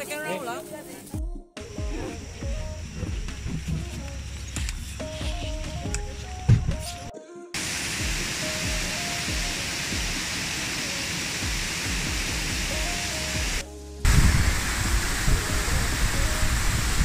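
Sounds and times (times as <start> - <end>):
light background music: 0.0 - 17.0
waterfall rushing: 7.6 - 17.0.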